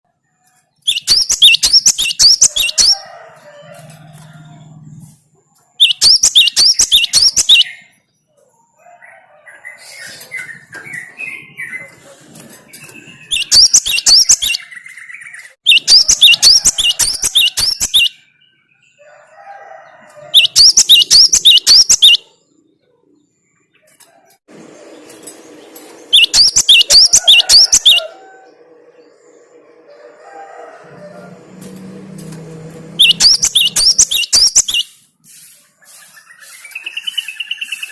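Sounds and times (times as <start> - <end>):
bird chattering calls: 15.7 - 18.2, 26.1 - 28.1, 33.0 - 35.0.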